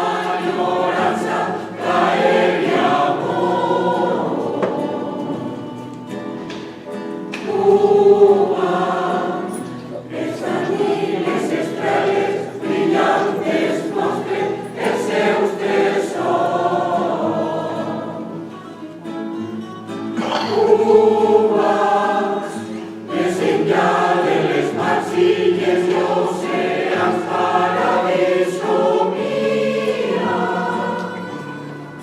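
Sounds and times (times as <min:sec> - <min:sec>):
choir singing: 0:00.0 - 0:32.0.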